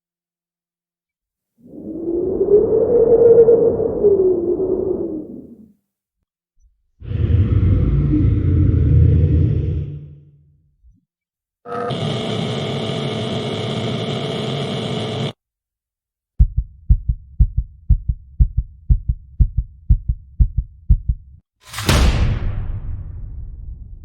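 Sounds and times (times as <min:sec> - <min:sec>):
heartbeat thumps: 0:16.4 - 0:21.4
loud impact hit: 0:21.6 - 0:24.0.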